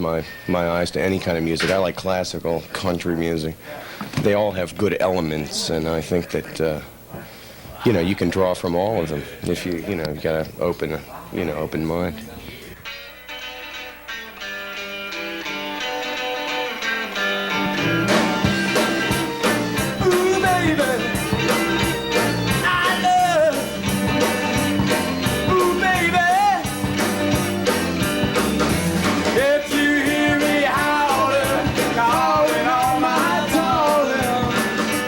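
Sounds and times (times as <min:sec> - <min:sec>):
guitar: 0:00.0 - 0:07.2, 0:08.2 - 0:35.0
bending lead melody: 0:13.1 - 0:35.0
drum beat: 0:17.5 - 0:35.0.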